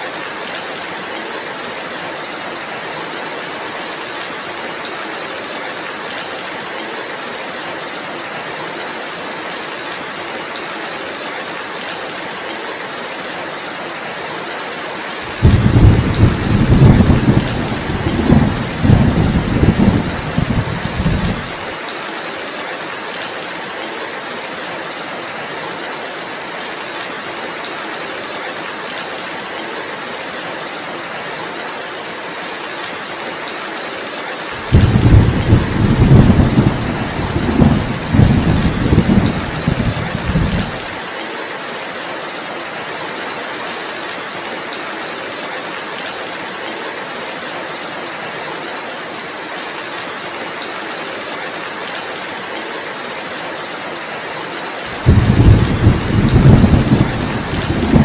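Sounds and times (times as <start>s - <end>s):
heavy rain hissing: 15.2s - 21.8s, 34.5s - 41.1s, 54.8s - 58.0s
thunder rolling: 15.4s - 21.6s, 34.6s - 40.9s, 55.0s - 58.0s.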